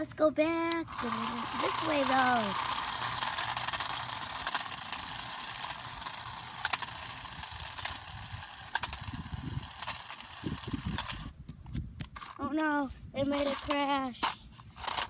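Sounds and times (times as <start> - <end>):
remote-control car motor whine: 0.7 - 11.4, 14.6 - 15.0.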